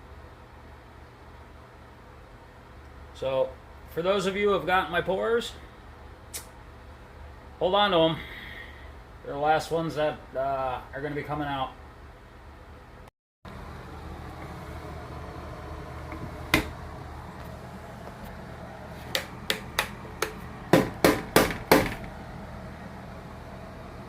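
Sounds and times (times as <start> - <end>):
steady low hum: 0.0 - 24.0
hard objects knocking: 19.0 - 22.1.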